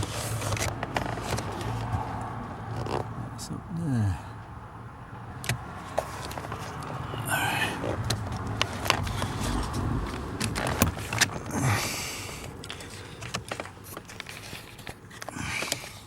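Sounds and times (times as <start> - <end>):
rustling and scraping: 0.0 - 3.2, 5.8 - 16.0
small clicks and knocks: 12.4 - 16.0.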